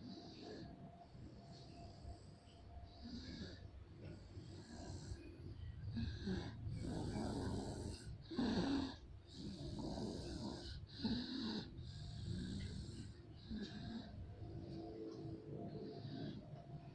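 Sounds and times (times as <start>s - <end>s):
person snoring: 4.3s - 14.8s.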